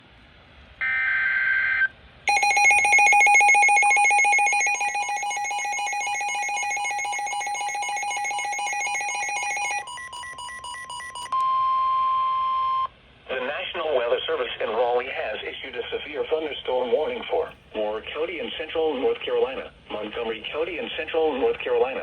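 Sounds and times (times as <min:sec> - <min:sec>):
high warning tone: 0:02.3 - 0:11.4
warbling data tones: 0:02.3 - 0:11.4.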